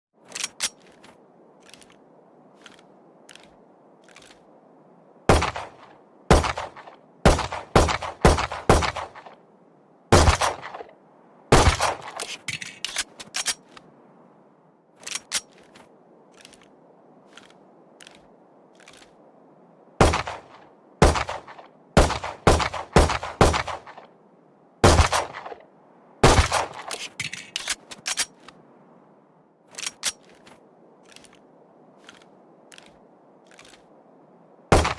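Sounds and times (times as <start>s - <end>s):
faint clicks: 0.3s - 4.5s, 15.0s - 19.2s, 29.7s - 33.9s.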